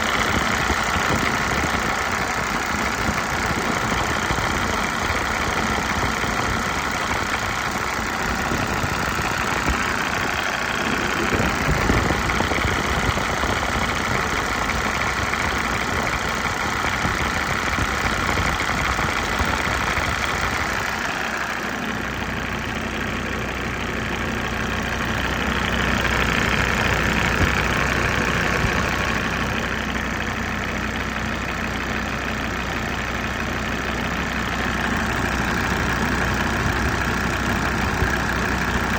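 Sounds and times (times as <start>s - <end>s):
diesel engine idling: 0.0s - 38.9s.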